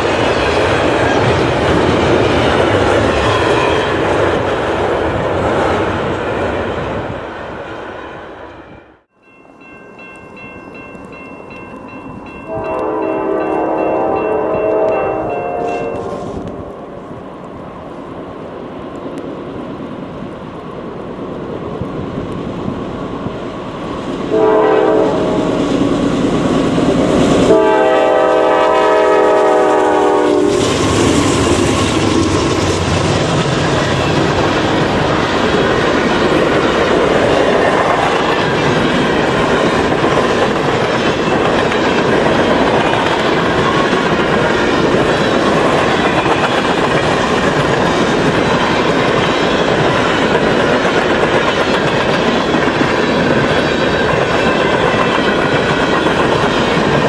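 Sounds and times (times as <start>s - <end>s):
diesel train rumbling: 0.0s - 8.6s, 10.7s - 57.0s
train horn blasts: 12.4s - 16.4s, 24.3s - 25.7s, 27.5s - 30.7s.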